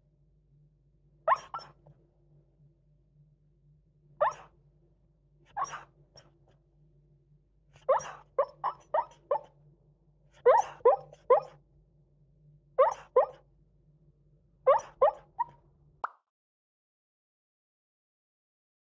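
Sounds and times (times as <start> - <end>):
dog yipping woofs and whimpers: 1.3 - 1.8, 4.2 - 4.5, 5.6 - 5.9, 7.8 - 9.5, 10.4 - 11.6, 12.8 - 13.4, 14.7 - 15.6.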